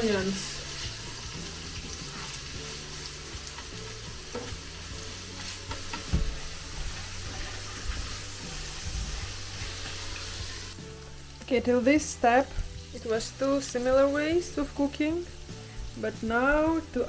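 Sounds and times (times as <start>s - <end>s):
food sizzling in a pan: 0.0s - 17.0s.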